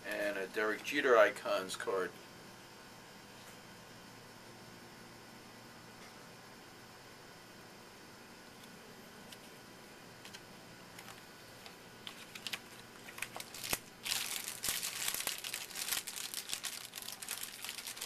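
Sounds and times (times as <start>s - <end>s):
card pack wrapper crinkling: 12.0s - 18.0s.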